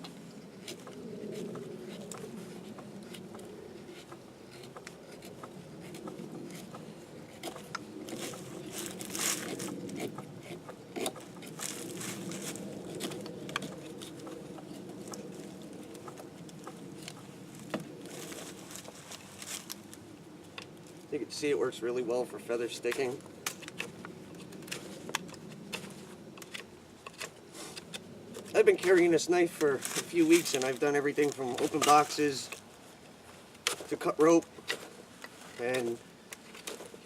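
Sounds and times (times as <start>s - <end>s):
steady low hum: 0.0s - 37.0s
knife scraping wood shavings: 0.5s - 15.4s, 22.7s - 32.7s.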